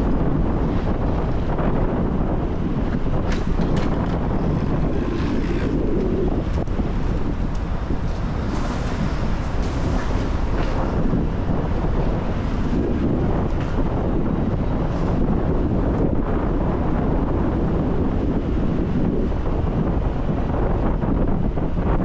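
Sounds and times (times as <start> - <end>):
car driving rumble: 0.0 - 22.0
road and tyre noise: 0.0 - 22.0
wind buffeting microphone: 0.0 - 22.0.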